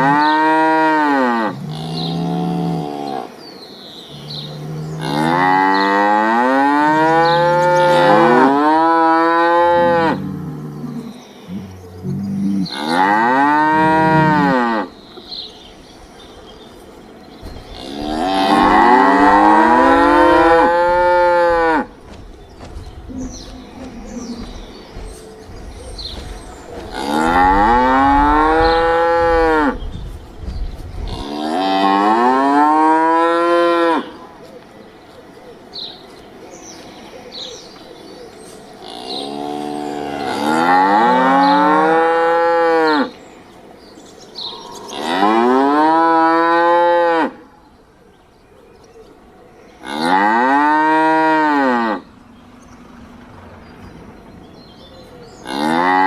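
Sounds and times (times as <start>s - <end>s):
cow mooing: 4.1s - 14.9s, 17.7s - 22.0s, 26.1s - 29.8s, 31.0s - 34.2s, 49.8s - 52.1s, 55.4s - 56.0s.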